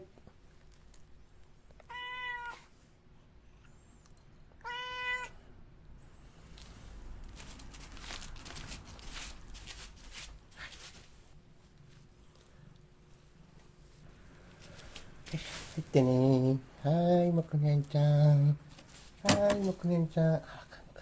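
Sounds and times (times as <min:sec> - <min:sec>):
cat meowing: 0:01.8 - 0:02.7, 0:04.6 - 0:05.4
faint rustling: 0:06.3 - 0:20.2.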